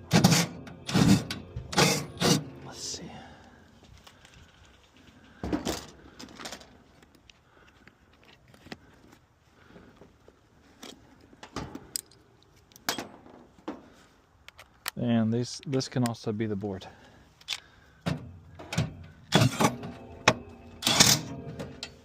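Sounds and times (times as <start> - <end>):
metal tools and screws rattling: 18.5 - 19.9.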